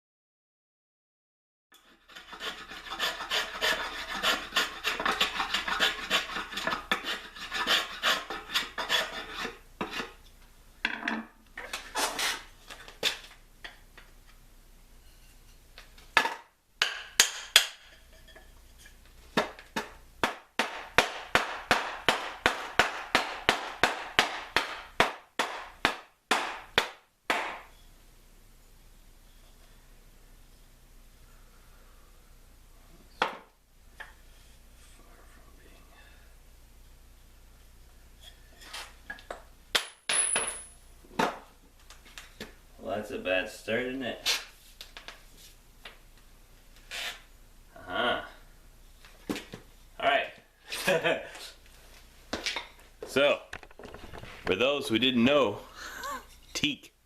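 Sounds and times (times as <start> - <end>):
rasping strokes on wood: 1.8 - 10.2.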